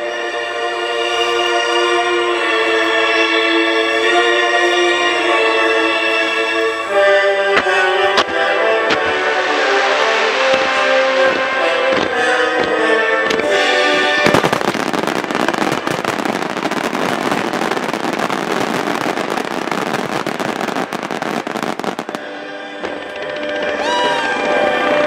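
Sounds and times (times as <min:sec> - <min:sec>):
music: 0:00.0 - 0:25.0
fireworks bursting and crackling: 0:07.0 - 0:25.0.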